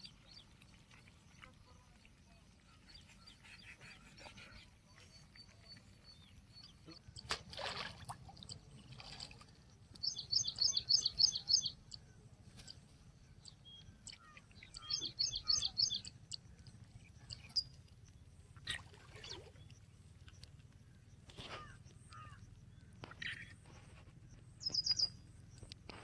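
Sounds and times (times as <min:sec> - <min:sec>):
songbird singing high notes: 0:10.0 - 0:11.8, 0:14.7 - 0:16.1, 0:24.6 - 0:25.1.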